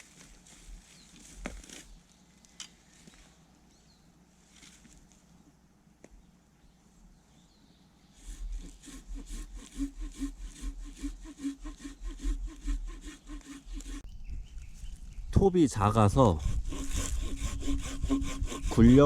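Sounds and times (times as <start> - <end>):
hand saw cutting wood: 8.2 - 14.0, 16.2 - 19.0.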